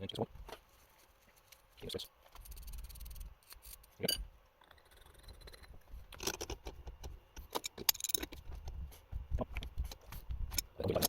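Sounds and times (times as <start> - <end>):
metal valve parts clicking: 7.4 - 8.4.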